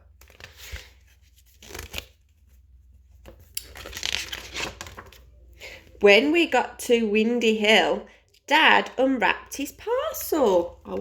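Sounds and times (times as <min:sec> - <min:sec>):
paper pages rustling: 0:00.1 - 0:05.3.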